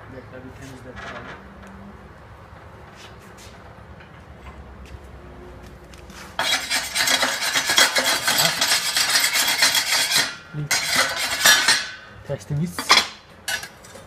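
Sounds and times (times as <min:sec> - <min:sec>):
metal scraping on steel: 0:06.2 - 0:14.0.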